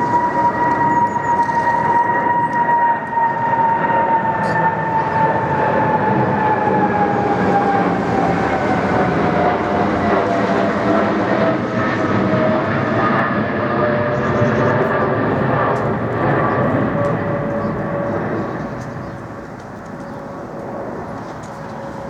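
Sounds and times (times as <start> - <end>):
jet engine roar with whine: 0.0 - 22.0.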